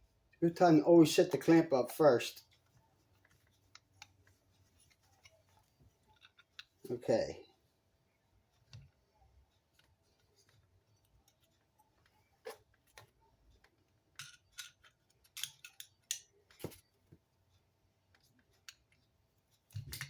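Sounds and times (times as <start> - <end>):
metal clicks and clinks: 14.1 - 16.8.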